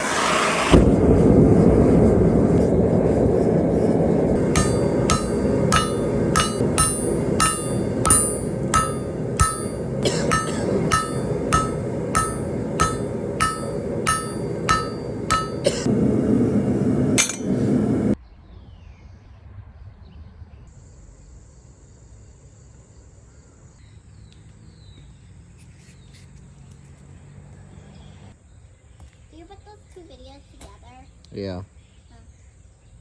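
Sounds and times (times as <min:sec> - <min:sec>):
hammer striking steel on anvil: 0:04.4 - 0:15.9, 0:17.2 - 0:17.6.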